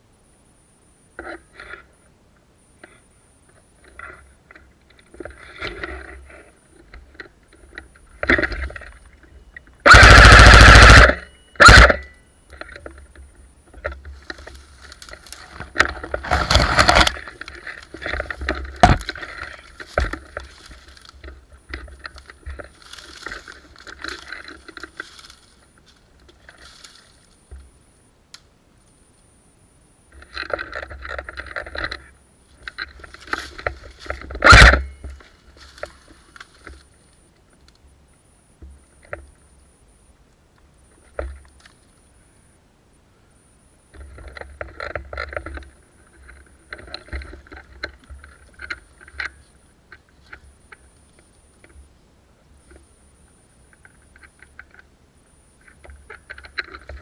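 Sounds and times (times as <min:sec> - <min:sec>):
airsoft rifle bursts: 0:09.8 - 0:12.1, 0:34.4 - 0:35.0.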